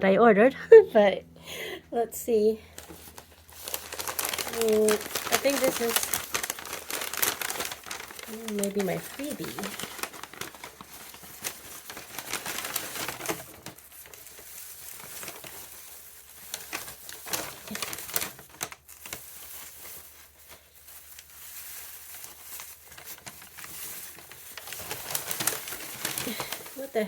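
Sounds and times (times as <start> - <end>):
packaging crinkling and rustling: 2.6 - 27.0
sharp clicks and crackles: 2.7 - 15.7.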